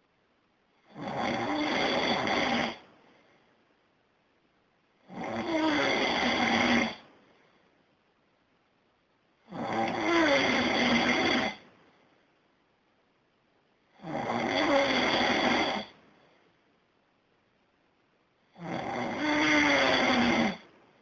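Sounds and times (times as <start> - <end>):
man snoring loudly: 0.8 - 2.8, 5.0 - 7.0, 9.5 - 11.6, 14.0 - 15.9, 18.5 - 20.6.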